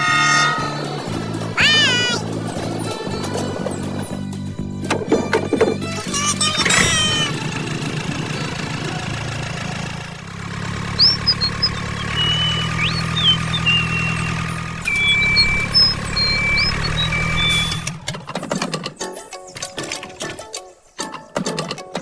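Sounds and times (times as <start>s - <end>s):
engine-like hum: 0.0s - 19.0s
high chirping whistling tones: 10.9s - 17.9s.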